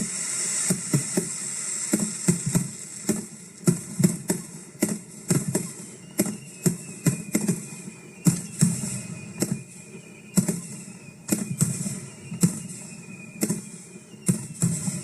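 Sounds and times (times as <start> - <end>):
fireworks hissing: 0.0 - 15.0
fireworks popping: 0.0 - 15.0.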